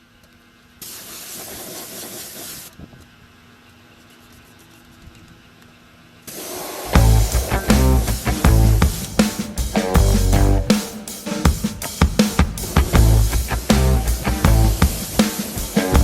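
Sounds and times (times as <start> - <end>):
spray hissing in bursts: 0.8 - 2.7.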